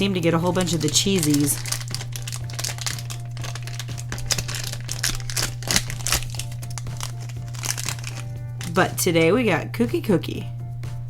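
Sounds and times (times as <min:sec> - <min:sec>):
plastic packet crinkling and tearing: 0:00.3 - 0:08.9.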